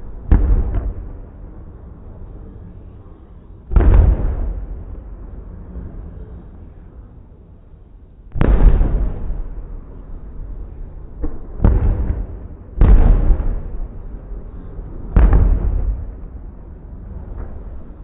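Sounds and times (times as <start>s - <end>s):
firework shells booming: 0.0s - 1.7s, 3.7s - 5.4s, 8.4s - 16.5s.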